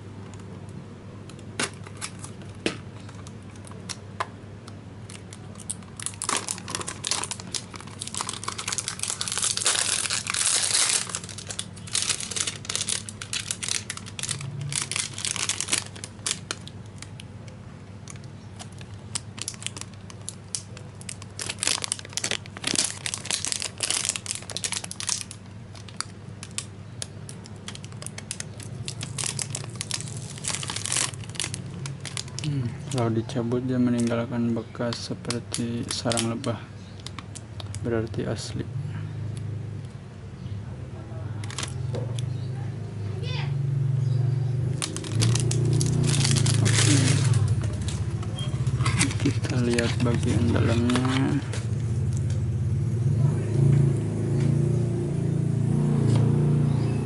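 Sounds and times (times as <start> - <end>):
plastic crinkling and tearing: 1.3 - 4.0, 5.0 - 38.2, 41.4 - 42.0, 44.6 - 52.5.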